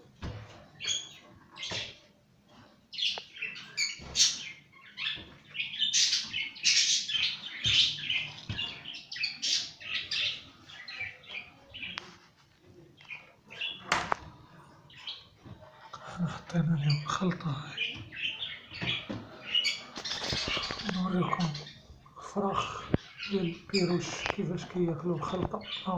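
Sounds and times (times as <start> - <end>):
lovebirds chirping and squawking: 0.2 - 25.9.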